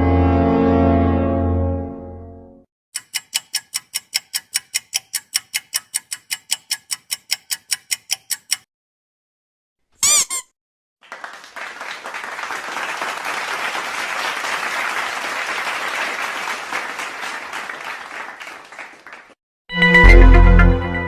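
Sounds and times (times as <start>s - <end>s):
crowd applause: 11.0s - 19.4s.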